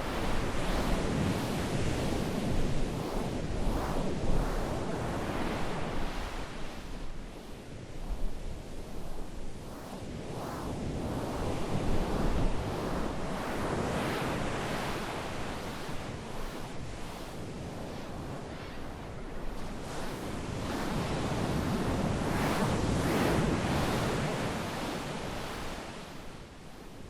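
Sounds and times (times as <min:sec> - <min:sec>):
surf-like whooshing noise: 0:00.0 - 0:27.0.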